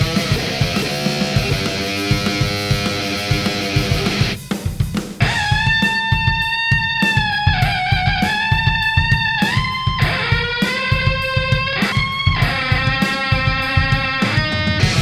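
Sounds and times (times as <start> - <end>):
steady drum beat: 0.0 - 15.0
distorted sliding electronic notes: 10.0 - 15.0.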